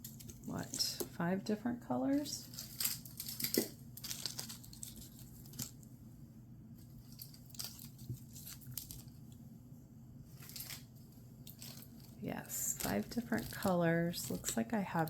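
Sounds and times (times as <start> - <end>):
plastic bags crinkling: 2.4 - 5.9, 6.9 - 9.2, 10.3 - 15.0.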